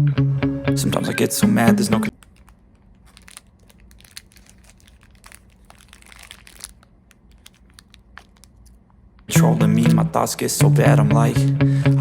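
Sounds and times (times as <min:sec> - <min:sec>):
snack packet crinkling: 0:02.1 - 0:09.0.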